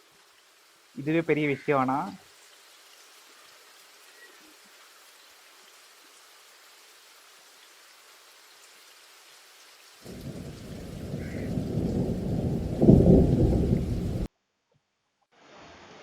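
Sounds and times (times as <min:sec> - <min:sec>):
light rain hissing: 0:00.0 - 0:14.3, 0:15.3 - 0:16.0
low rumble of thunder: 0:10.1 - 0:14.3.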